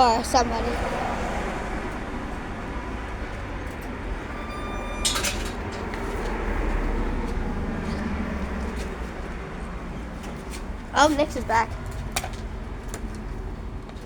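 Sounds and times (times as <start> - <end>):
low traffic rumble: 0.0 - 14.0
steady high tone: 4.2 - 5.6.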